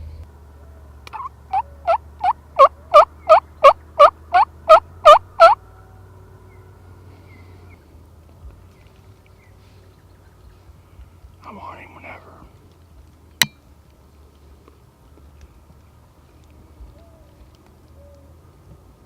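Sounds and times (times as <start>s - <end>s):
turkey yelps: 0.6s - 5.6s.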